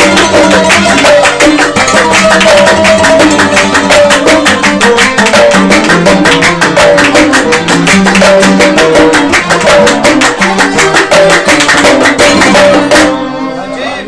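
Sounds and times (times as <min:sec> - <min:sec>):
violins and hand drums ensemble: 0:00.0 - 0:13.4.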